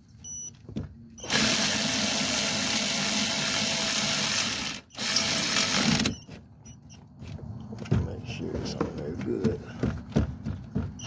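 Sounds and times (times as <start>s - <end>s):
cordless power tool running: 1.2s - 6.1s.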